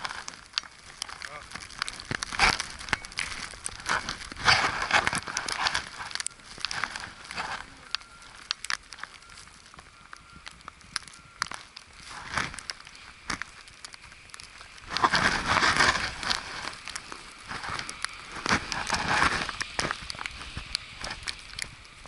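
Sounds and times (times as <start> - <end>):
sharp crackles: 0.0 - 22.0
footsteps crunching through snow: 11.6 - 21.3.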